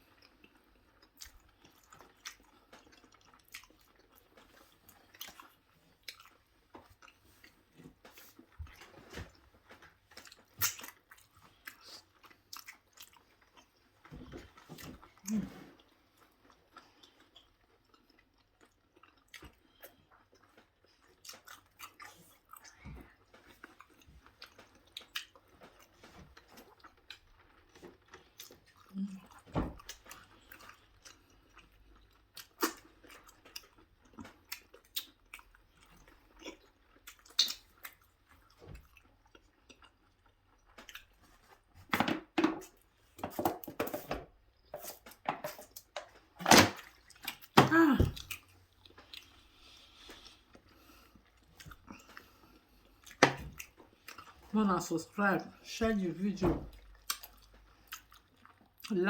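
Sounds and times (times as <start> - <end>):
person chewing and crunching: 0.0 - 41.8, 42.6 - 54.8, 55.4 - 59.0
wet mouth noises: 10.2 - 13.0, 36.4 - 38.0.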